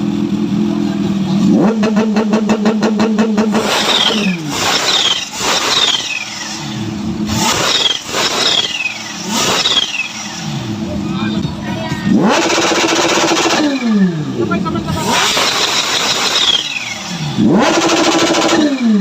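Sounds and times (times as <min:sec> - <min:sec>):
motorcycle engine revving: 0:00.0 - 0:19.0
supercharger whistle: 0:03.6 - 0:10.4, 0:15.0 - 0:18.6.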